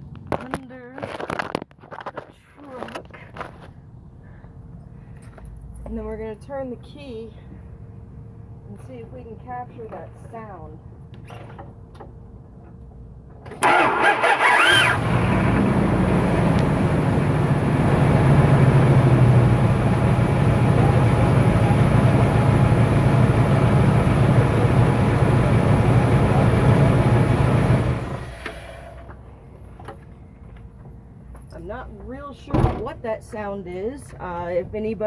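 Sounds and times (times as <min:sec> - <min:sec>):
starter cranking with whine: 0:13.5 - 0:17.0
engine idling: 0:13.6 - 0:29.2.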